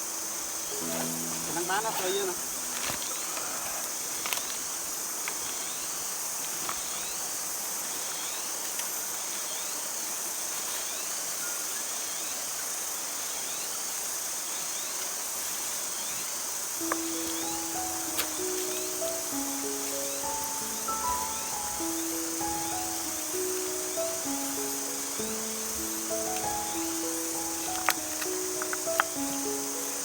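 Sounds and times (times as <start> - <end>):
music: 0.0 - 4.6, 16.8 - 30.0
high-pitched insect chorus: 0.0 - 30.0.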